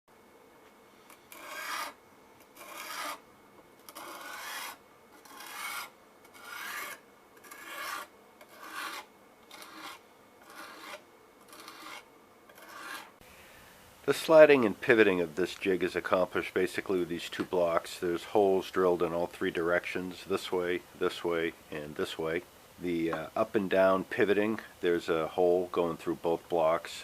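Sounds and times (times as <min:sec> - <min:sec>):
sharpening stone rasping on knife: 0:01.3 - 0:02.0, 0:02.6 - 0:03.2, 0:03.9 - 0:13.1.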